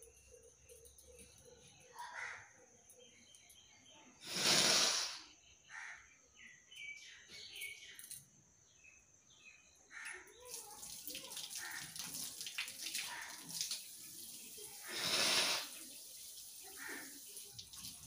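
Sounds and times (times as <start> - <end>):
faint chirps: 0.0 - 11.8.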